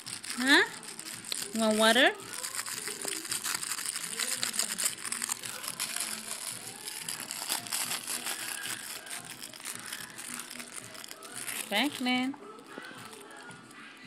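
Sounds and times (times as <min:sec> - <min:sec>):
crinkling and rustling: 0:00.0 - 0:13.8.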